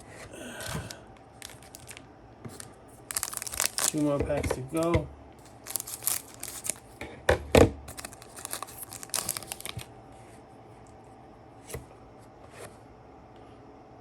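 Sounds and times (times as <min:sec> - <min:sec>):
wrapper tearing and crinkling: 0:01.4 - 0:04.7, 0:05.4 - 0:06.9, 0:07.9 - 0:09.9.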